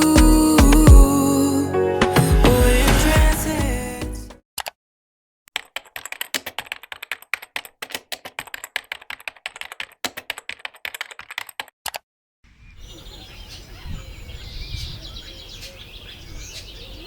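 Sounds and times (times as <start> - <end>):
fast typing on keyboard: 5.6 - 11.7.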